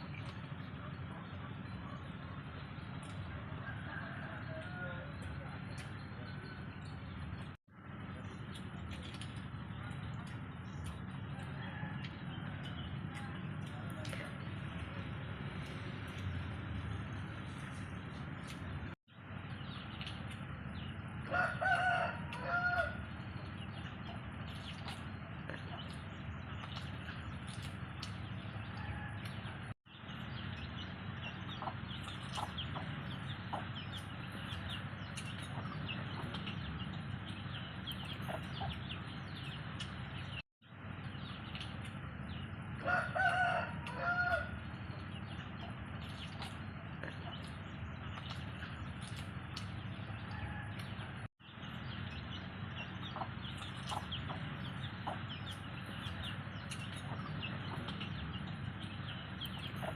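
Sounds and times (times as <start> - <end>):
rooster crowing: 3.6 - 5.2, 11.4 - 12.8, 21.3 - 23.0, 28.8 - 29.6, 42.8 - 44.6, 50.2 - 51.2.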